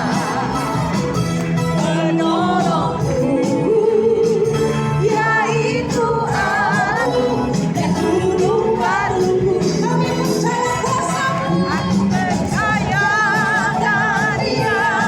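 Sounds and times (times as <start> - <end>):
instrumental backing music: 0.0 - 15.0
person singing with vibrato: 0.0 - 15.0.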